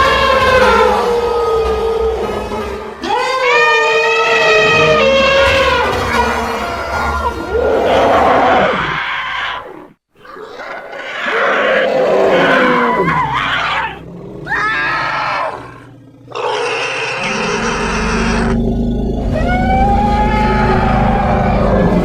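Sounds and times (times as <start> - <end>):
elephant-like roars and trumpets: 0.0 - 9.9, 10.6 - 22.0
deep low rumble: 17.7 - 22.0.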